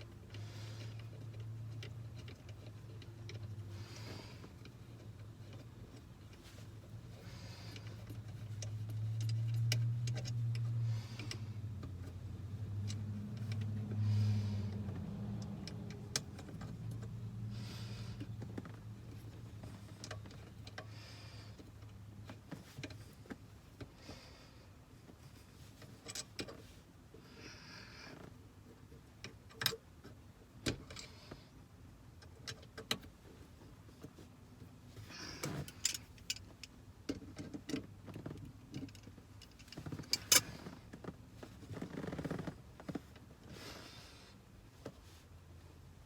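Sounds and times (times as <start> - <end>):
metallic clicks of hand tools: 7.7 - 14.0.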